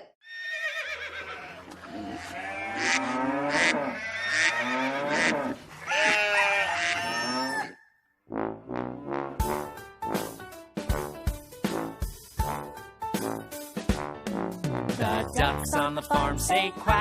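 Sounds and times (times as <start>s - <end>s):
goats bleating: 0.4s - 7.6s
cattle mooing: 1.2s - 7.8s.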